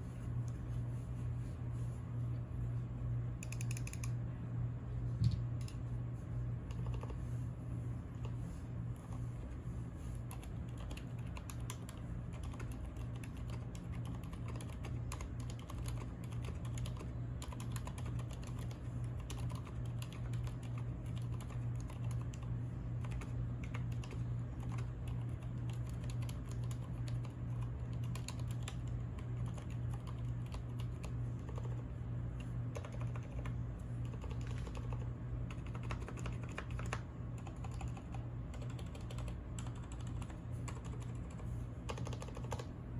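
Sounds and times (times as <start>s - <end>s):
steady low hum: 0.0s - 42.9s
typing on mechanical keyboard: 6.7s - 7.1s, 10.3s - 31.9s, 32.7s - 42.7s.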